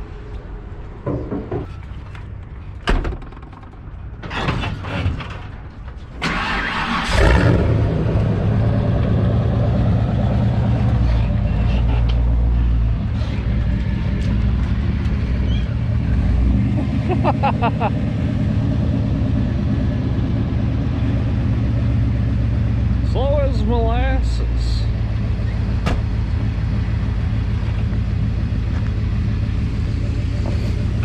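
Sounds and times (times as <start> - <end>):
clunk: 1.0 - 6.2
truck engine starting and idling: 1.9 - 31.0.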